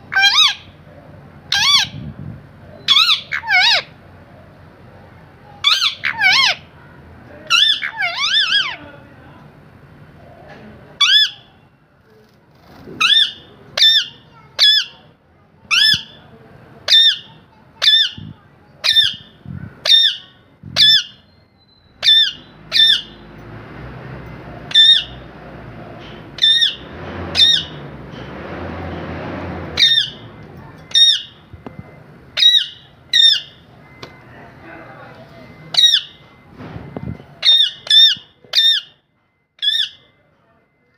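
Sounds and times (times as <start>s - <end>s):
parrot squawking: 0.0s - 0.8s, 1.5s - 2.0s, 2.8s - 4.0s, 5.6s - 6.7s, 7.4s - 8.8s, 11.0s - 11.5s, 13.0s - 15.0s, 15.7s - 16.2s, 16.9s - 23.3s, 24.7s - 25.3s, 26.4s - 27.8s, 29.8s - 30.3s, 30.9s - 31.5s, 32.4s - 33.6s, 35.7s - 36.2s, 37.4s - 39.0s, 39.6s - 40.1s
broad background rush: 0.0s - 39.1s.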